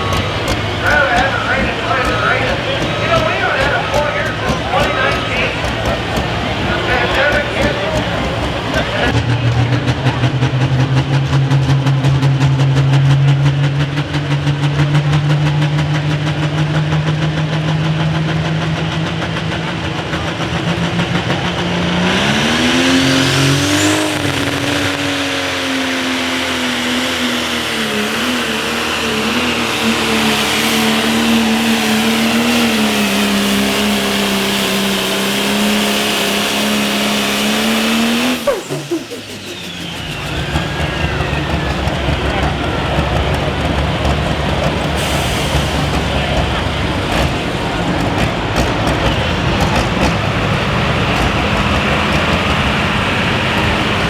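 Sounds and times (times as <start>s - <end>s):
diesel tractor engine under load: 0.0s - 54.0s
high turbo whine: 0.0s - 54.0s.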